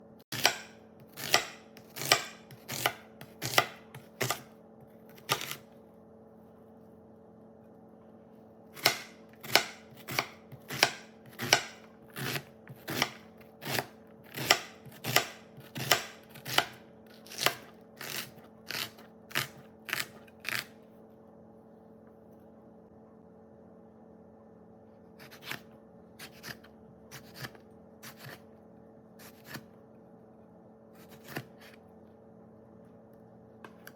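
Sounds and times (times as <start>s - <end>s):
faint steady hum: 0.0s - 33.9s
knife chopping on cutting board: 0.3s - 4.5s, 5.1s - 5.6s, 8.8s - 20.7s, 26.2s - 28.4s.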